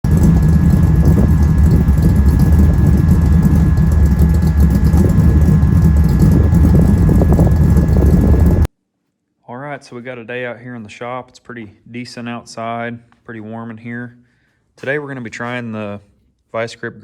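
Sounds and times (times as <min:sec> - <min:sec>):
engine idling: 0:00.0 - 0:08.7
faint high whine: 0:00.0 - 0:08.7.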